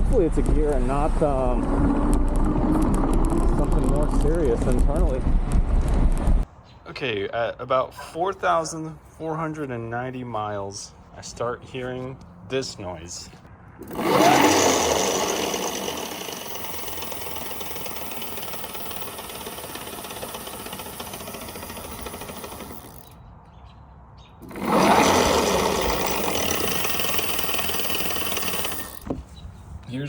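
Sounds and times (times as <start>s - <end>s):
hub motor grinding and rattling: 1.6s - 5.0s, 13.8s - 23.2s, 24.4s - 29.4s.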